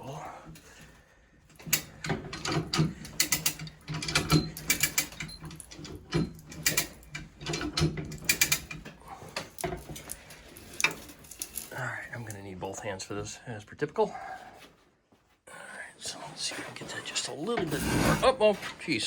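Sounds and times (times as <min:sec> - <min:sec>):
chain hoist ratcheting: 0:01.5 - 0:11.8
chain rattling: 0:01.5 - 0:12.1
metal clicks and clanks: 0:01.5 - 0:12.4.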